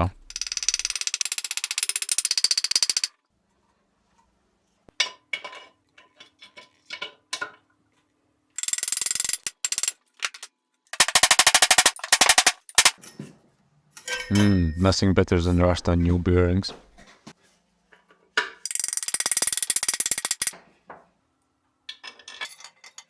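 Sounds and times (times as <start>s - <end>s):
fast even clicking of tools: 0.3s - 3.1s, 8.6s - 13.0s, 18.7s - 20.5s.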